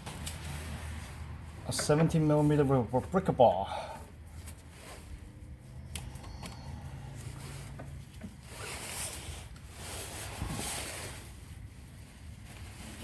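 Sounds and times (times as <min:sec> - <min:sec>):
rustling: 0:07.1 - 0:13.0.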